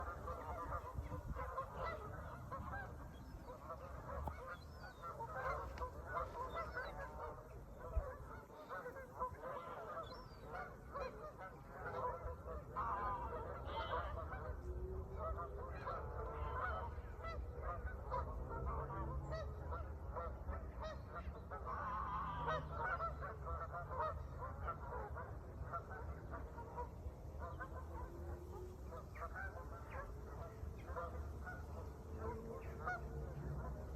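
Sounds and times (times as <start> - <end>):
flock of birds calling: 0.0 - 33.9.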